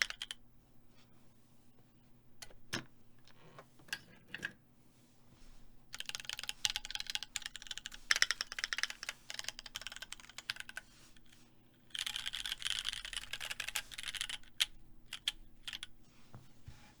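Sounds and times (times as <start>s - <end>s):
mechanical keyboard typing: 0.0s - 0.4s, 6.0s - 10.9s, 11.9s - 15.9s.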